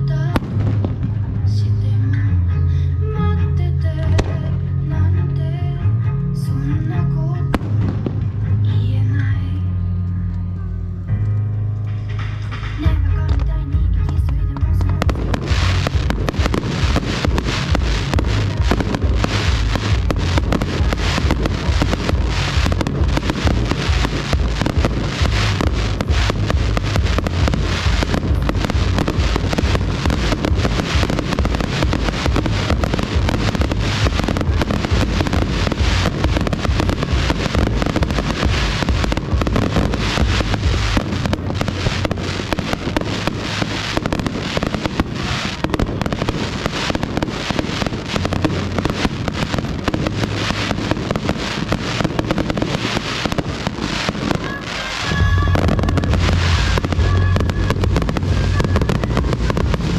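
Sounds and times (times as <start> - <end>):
deep firework booms: 0.2 - 1.6, 7.5 - 8.6, 12.7 - 59.9
fireworks crackling rattle: 11.9 - 59.9.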